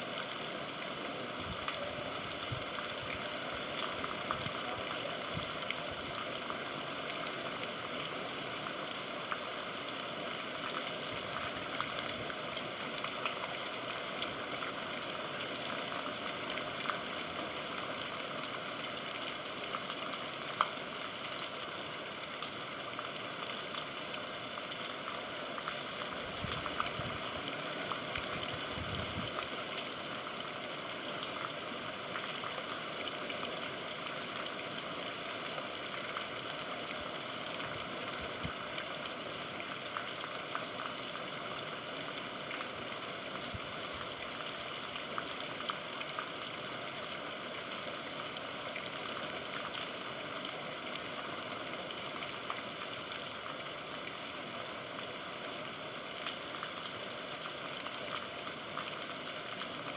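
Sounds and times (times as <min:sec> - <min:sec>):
steady rain: 0:00.0 - 0:59.9.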